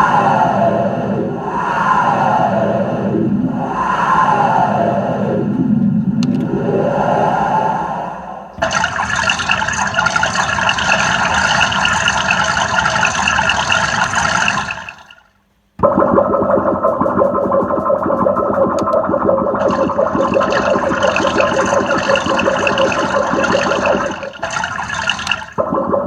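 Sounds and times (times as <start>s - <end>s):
dull distorted sound effect: 15.8s - 26.0s.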